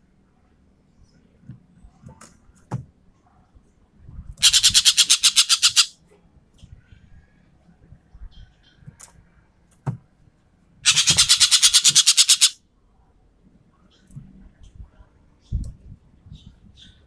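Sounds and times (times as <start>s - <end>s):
bird harsh rattling call: 4.4s - 5.9s, 10.8s - 12.6s
faint short bird calls: 4.4s - 5.9s, 10.8s - 12.6s.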